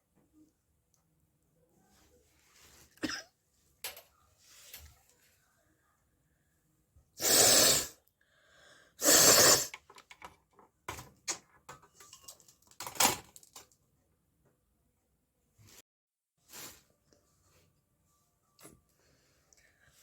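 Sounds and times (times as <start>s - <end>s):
person blowing air through nose: 7.2s - 8.0s, 9.0s - 9.8s.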